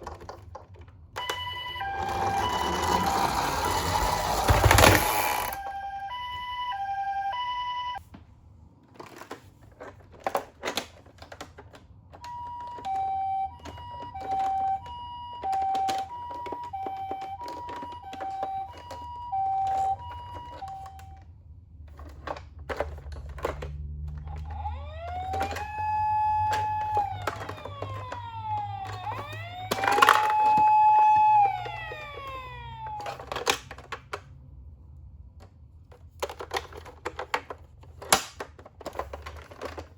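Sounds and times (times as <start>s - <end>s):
plastic toy clicks and rattles: 0.0s - 5.7s, 8.8s - 21.2s, 21.8s - 34.4s, 35.9s - 39.9s
toy siren two-tone wail: 1.2s - 8.0s, 12.2s - 21.2s, 24.2s - 33.6s.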